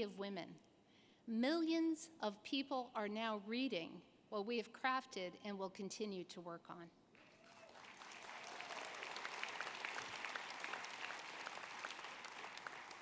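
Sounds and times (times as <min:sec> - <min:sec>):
audience applauding: 0:07.2 - 0:13.0.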